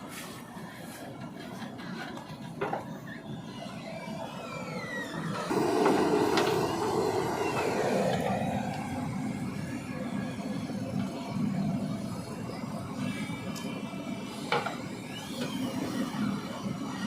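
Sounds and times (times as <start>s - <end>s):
backhoe loader working: 0.0s - 17.0s
machine squeals: 1.7s - 10.8s, 12.7s - 17.0s.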